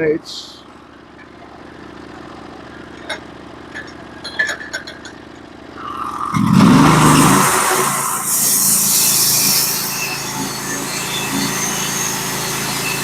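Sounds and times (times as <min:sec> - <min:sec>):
sawmill engine idling and revving: 0:00.0 - 0:13.0
band saw blade spinning: 0:05.8 - 0:13.0.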